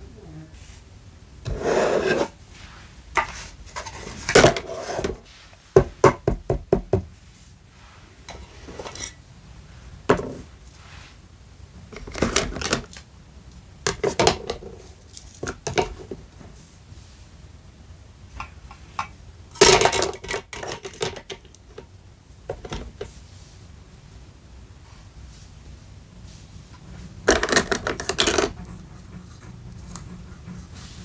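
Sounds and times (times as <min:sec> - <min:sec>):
toy kitchen pieces knocking: 0:18.4 - 0:21.9, 0:27.2 - 0:28.6.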